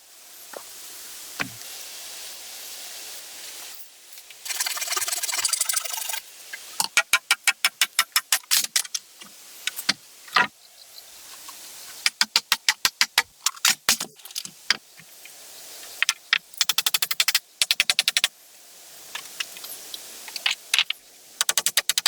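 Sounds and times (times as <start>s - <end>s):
rapid sharp clicks: 20.4s - 22.0s.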